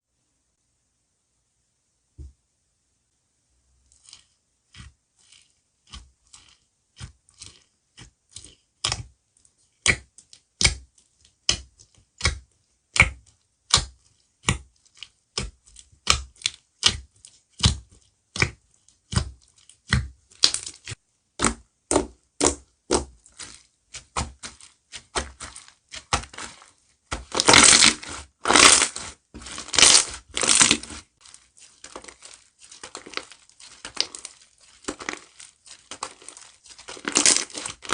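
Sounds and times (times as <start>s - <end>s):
slime crackling: 3.9s - 7.7s, 13.7s - 37.9s.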